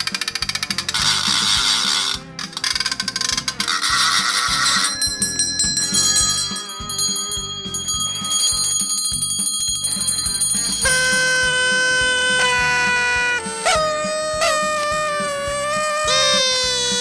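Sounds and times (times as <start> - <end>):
ratchet rapid clicking: 0.0 - 17.0
party bells ringing: 3.0 - 17.0
party horn reedy note: 10.4 - 17.0.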